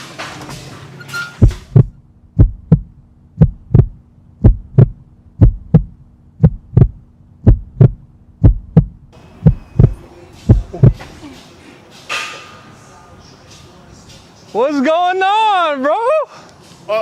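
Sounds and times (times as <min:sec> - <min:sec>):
heartbeat thumps: 0:01.4 - 0:11.0
low hum: 0:01.4 - 0:11.0.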